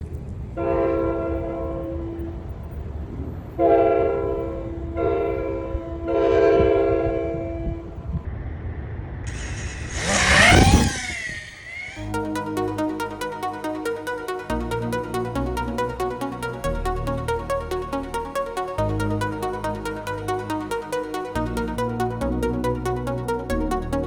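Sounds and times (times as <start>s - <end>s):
train horn blasts: 0.6s - 2.6s, 3.6s - 8.0s
rushing whoosh with whining tones: 8.2s - 14.3s.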